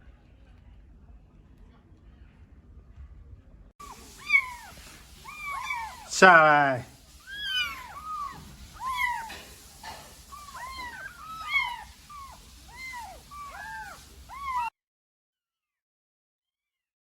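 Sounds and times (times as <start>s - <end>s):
kittens mewing: 3.8s - 14.7s.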